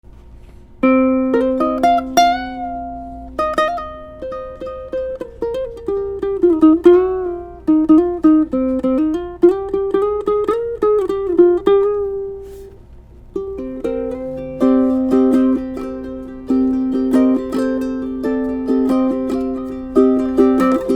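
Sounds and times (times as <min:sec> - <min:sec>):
ukulele plucked melody: 0:00.8 - 0:20.9.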